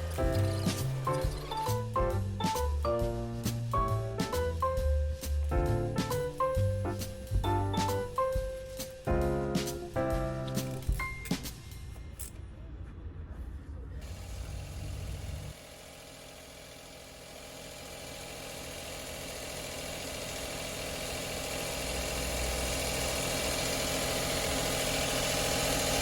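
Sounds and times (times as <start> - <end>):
small engine idling: 0.0 - 9.8, 14.0 - 26.0.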